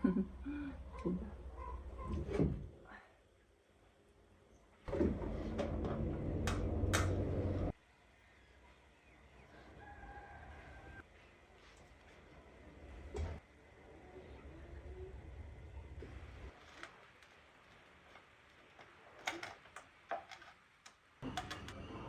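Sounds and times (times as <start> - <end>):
rooster crowing: 9.7 - 11.0.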